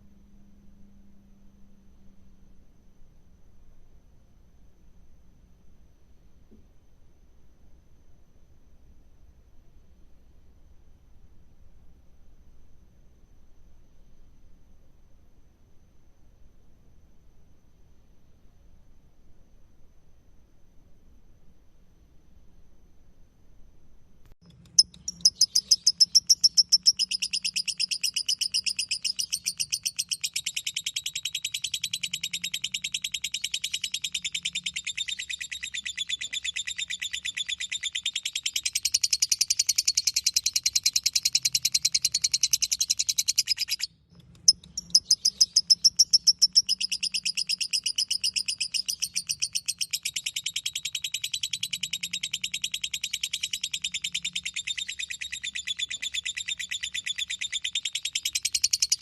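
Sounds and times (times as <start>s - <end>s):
bird shrill chattering: 24.8s - 43.9s, 44.5s - 59.0s.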